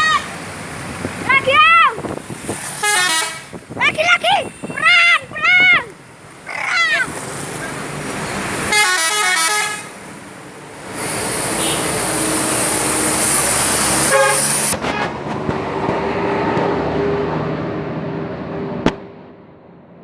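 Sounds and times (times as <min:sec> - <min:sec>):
loud steady rush of noise: 0:00.0 - 0:20.0
multi-tone bus horn tune: 0:02.8 - 0:03.6, 0:08.7 - 0:10.0, 0:11.5 - 0:12.6, 0:13.9 - 0:15.3.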